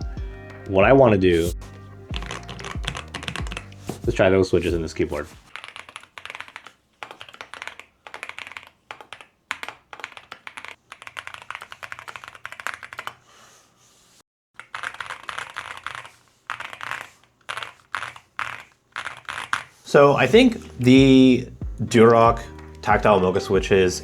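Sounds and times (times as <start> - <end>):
mechanical keyboard typing: 2.1 - 4.1, 5.5 - 13.2, 14.6 - 19.7.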